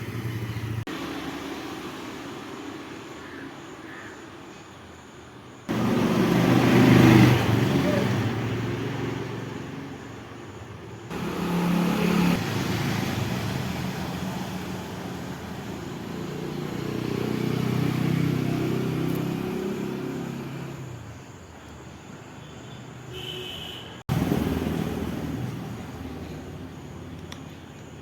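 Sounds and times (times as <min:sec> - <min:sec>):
vehicle engine running: 0:05.7 - 0:08.7, 0:11.1 - 0:16.8.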